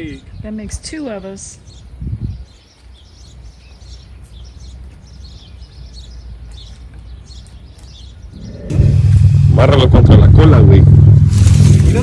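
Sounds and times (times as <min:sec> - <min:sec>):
birds chirping: 0:00.0 - 0:12.0
low background rumble: 0:08.5 - 0:12.0.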